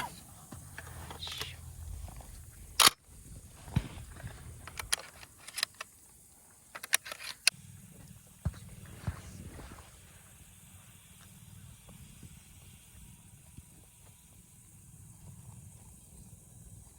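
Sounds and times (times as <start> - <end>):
shotgun loading clicks: 2.8 - 3.0, 4.6 - 5.9, 6.7 - 7.6.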